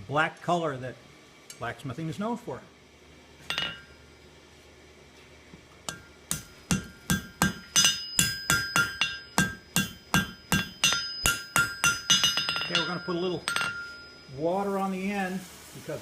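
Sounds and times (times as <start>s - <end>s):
hammer ringing on anvil: 3.5s - 4.0s, 5.9s - 14.7s.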